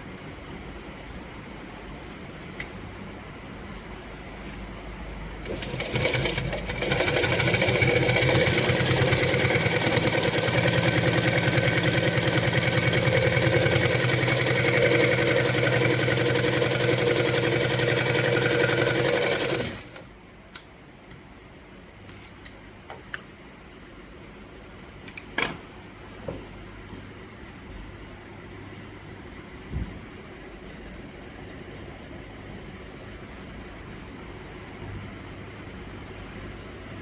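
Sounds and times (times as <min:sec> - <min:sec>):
sewing machine clattering: 0:05.5 - 0:20.0.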